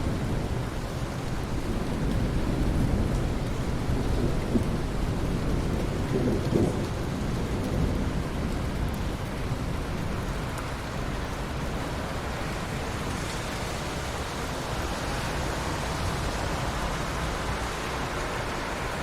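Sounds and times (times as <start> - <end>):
heavy rain: 0.0 - 19.0
running water: 10.0 - 19.0.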